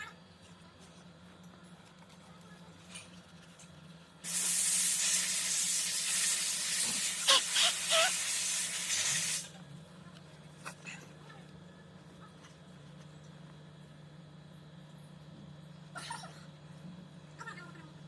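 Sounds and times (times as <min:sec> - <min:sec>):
pressurised spray hissing: 0:04.2 - 0:09.5.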